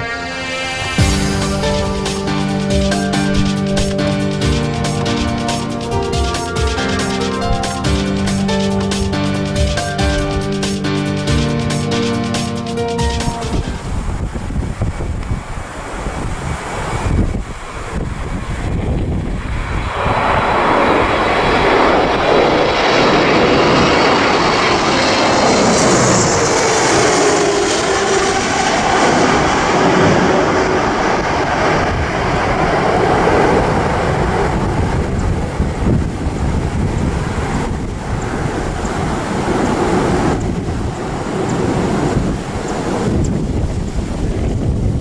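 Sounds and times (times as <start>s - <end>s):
jet roar passing by: 0.0s - 45.0s
wind buffeting microphone: 13.5s - 45.0s.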